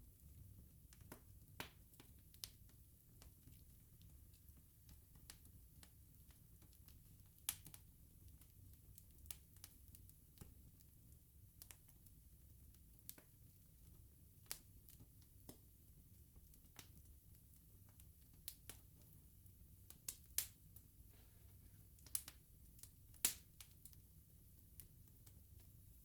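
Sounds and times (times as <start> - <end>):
bonfire logs crackling: 0.8 - 26.0
sharp pops and snaps: 0.9 - 3.6, 19.9 - 20.6, 22.0 - 24.0.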